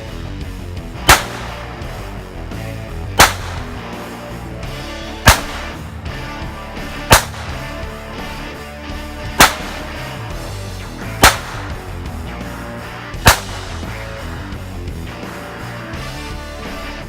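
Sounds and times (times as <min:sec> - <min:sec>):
background music: 0:00.0 - 0:17.0
gunshots: 0:01.1 - 0:02.1, 0:03.1 - 0:04.4, 0:05.2 - 0:08.6, 0:09.4 - 0:12.2, 0:13.2 - 0:14.4.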